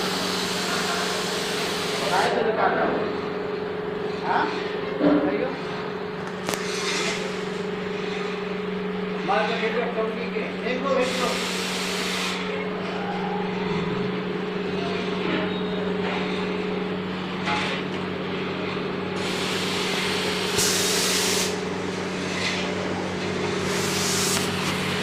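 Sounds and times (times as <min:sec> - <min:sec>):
steam hissing: 0:00.0 - 0:02.2, 0:11.0 - 0:12.4, 0:19.2 - 0:21.6, 0:23.6 - 0:25.0
machine motor hum: 0:00.0 - 0:25.0.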